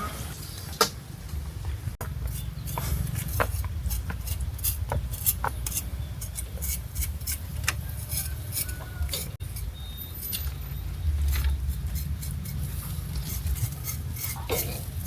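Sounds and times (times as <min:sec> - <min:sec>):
steady low rumble: 0:09.2 - 0:15.0
utensils and dishes clinking: 0:13.3 - 0:15.0.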